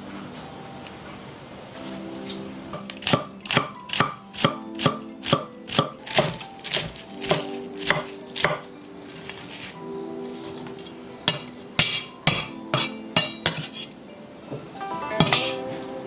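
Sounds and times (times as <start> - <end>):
knife chopping on cutting board: 2.8 - 9.7, 11.3 - 13.9, 15.2 - 15.6.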